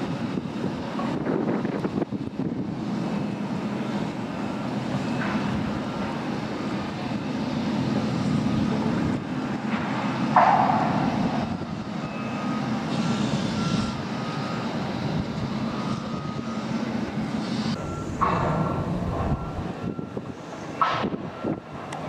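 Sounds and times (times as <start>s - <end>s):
wind: 0.0s - 22.0s
boat engine drone: 2.7s - 22.0s.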